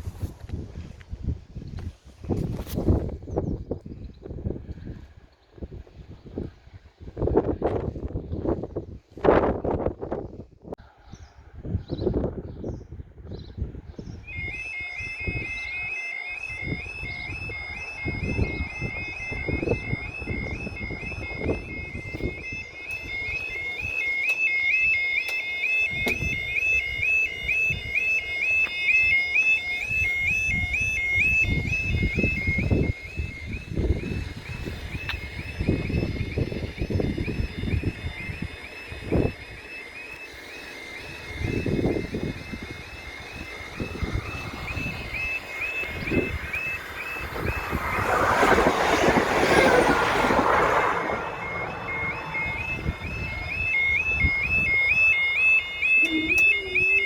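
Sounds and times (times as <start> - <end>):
wind buffeting microphone: 0.0 - 57.0
level crossing alarm warble: 13.6 - 57.0
train passing: 43.3 - 53.2.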